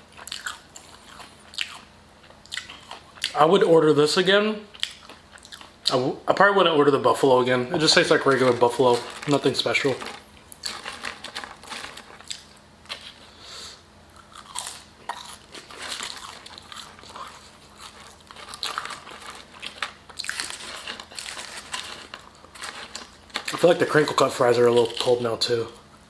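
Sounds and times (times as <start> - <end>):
person chewing crunchy food: 0.0 - 3.4, 4.7 - 6.0, 7.8 - 13.4, 14.1 - 23.7.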